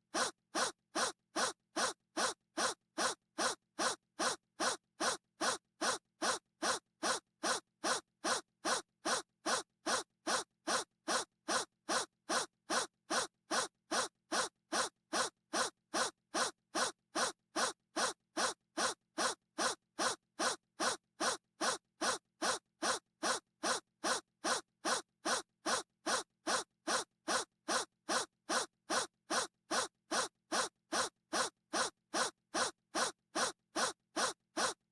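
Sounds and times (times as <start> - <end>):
short breathy gasp: 13.5 - 34.8.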